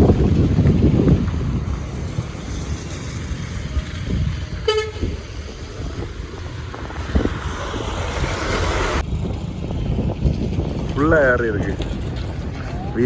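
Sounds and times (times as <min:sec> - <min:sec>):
rushing noise: 0:00.0 - 0:13.0
traffic noise: 0:00.0 - 0:13.0
wind rumbling on microphone: 0:00.0 - 0:13.0
vehicle horn toot: 0:04.6 - 0:05.2.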